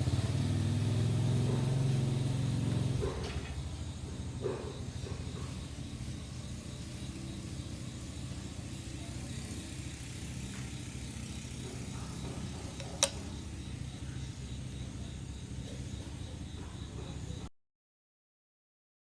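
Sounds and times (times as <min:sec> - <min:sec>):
small engine running: 0:00.0 - 0:17.5
sharp click: 0:12.8 - 0:13.3.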